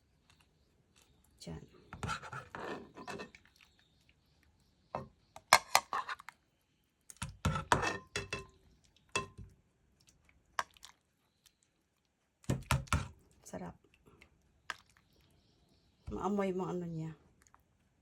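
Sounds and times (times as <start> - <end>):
dishes and utensils clinking: 7.5 - 9.5.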